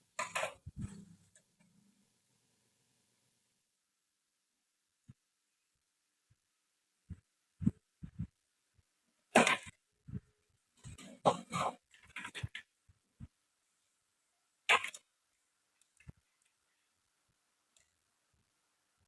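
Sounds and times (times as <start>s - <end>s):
parts scraping: 0.2s - 1.4s.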